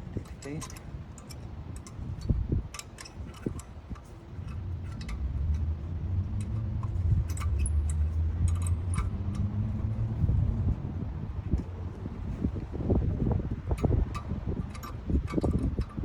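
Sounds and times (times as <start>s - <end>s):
metal brake parts clicking: 0.0s - 10.6s, 12.3s - 16.0s
low steady rumble: 0.0s - 16.0s.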